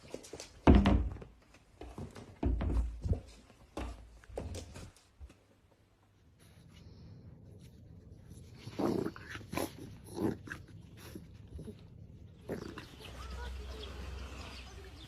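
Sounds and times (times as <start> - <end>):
dog gruff vocalising: 8.2 - 13.5.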